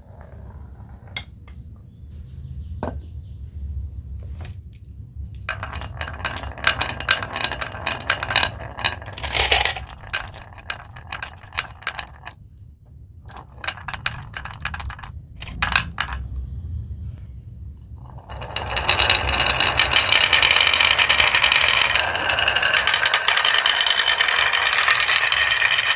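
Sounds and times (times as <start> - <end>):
marbles clattering down a track: 5.4 - 12.4, 13.3 - 16.5, 18.0 - 25.9.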